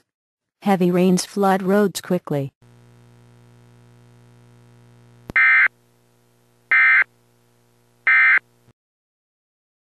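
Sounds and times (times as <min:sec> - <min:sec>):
faint hum: 0:02.6 - 0:08.8.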